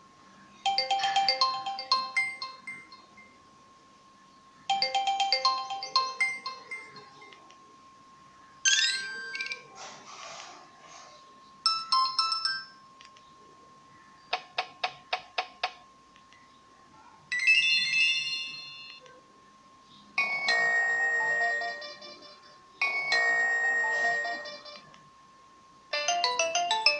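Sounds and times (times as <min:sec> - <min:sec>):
faint steady high tone: 0:00.0 - 0:09.8, 0:16.4 - 0:26.9
mobile phone ringtones: 0:00.6 - 0:03.4, 0:04.7 - 0:07.3, 0:17.3 - 0:19.0, 0:20.2 - 0:24.8, 0:25.9 - 0:26.9.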